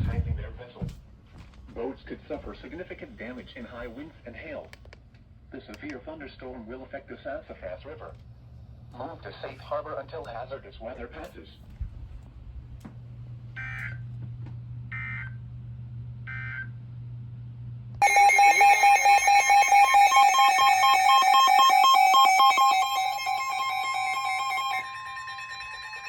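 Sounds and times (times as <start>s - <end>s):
buzzy data bursts: 18.0s - 26.0s
low hum: 18.0s - 26.0s
warbling two-pitch alert tone: 18.0s - 26.0s.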